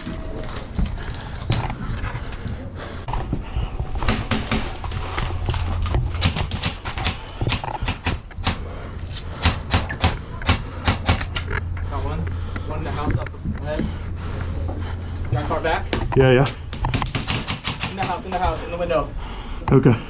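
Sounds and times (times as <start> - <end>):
low rumble: 0.0 - 17.1
airsoft gun shots: 9.4 - 11.5.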